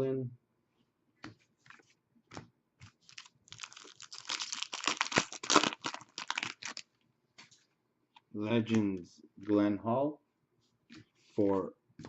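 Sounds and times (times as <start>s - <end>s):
wrapper crinkling and tearing: 3.0s - 6.8s.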